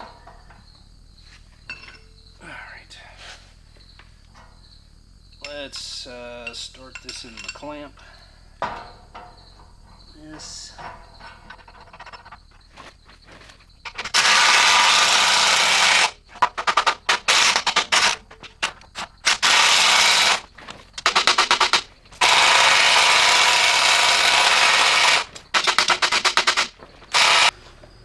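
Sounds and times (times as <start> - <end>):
impact wrench hammering blows: 5.4 - 27.6
impact wrench running: 13.8 - 18.3, 19.2 - 27.6.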